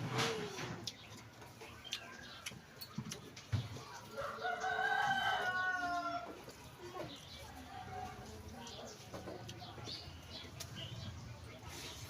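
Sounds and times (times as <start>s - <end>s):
rooster crowing: 4.1s - 6.3s.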